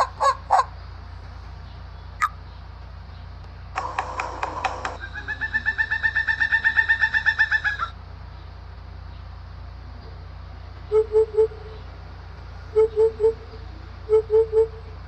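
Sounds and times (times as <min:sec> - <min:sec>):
bird call with rapid knocking: 0:02.2 - 0:02.5, 0:03.8 - 0:07.9.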